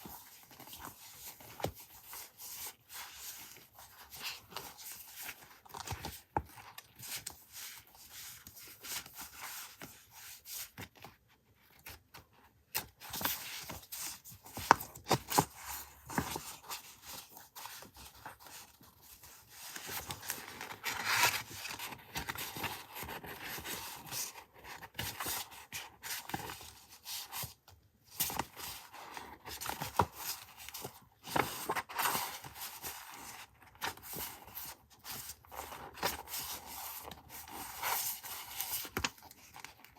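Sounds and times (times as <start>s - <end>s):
paper rustling and rubbing: 13.0s - 27.5s.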